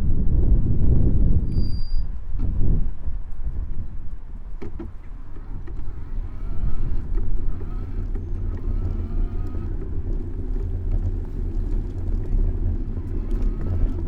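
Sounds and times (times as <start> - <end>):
road and wind rumble: 0.0 - 14.0
faint whine: 4.5 - 14.0.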